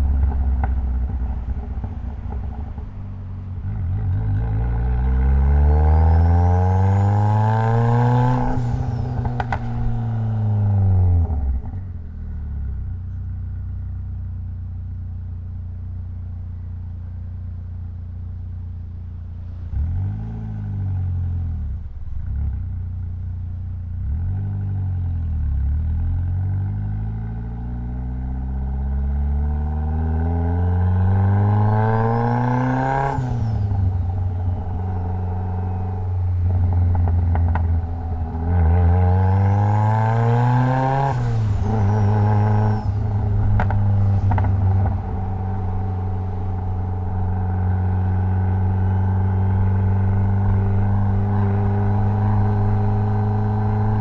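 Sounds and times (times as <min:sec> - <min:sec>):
car engine accelerating hard: 0:00.0 - 0:11.9, 0:27.9 - 0:54.0.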